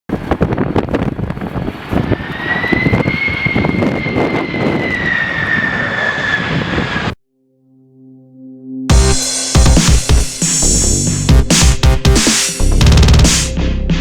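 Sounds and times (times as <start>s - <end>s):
wind buffeting microphone: 0.1s - 7.2s
jet engines whining: 1.1s - 7.2s.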